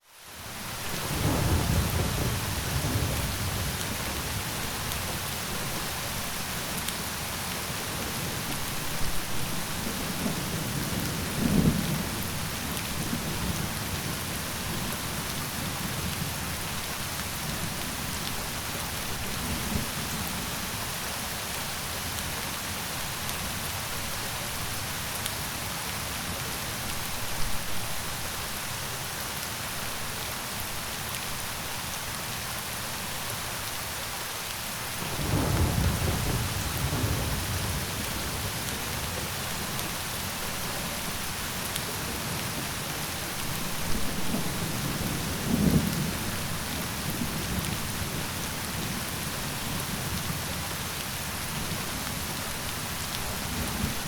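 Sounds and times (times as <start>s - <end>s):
steady rain hiss: 0.0s - 54.0s
thunder rumbling: 35.0s - 39.8s.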